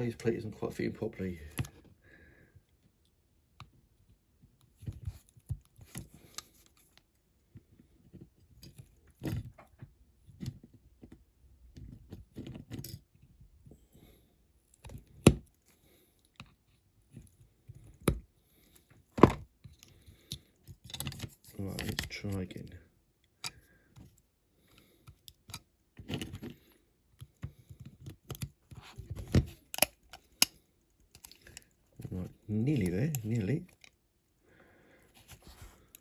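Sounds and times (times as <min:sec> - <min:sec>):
small clicks taps and scrapes: 0:02.6 - 0:13.7, 0:14.6 - 0:34.4, 0:35.1 - 0:36.0.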